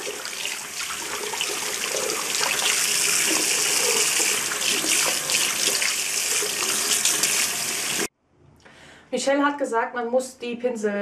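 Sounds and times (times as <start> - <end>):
tap running water: 0.0 - 8.1.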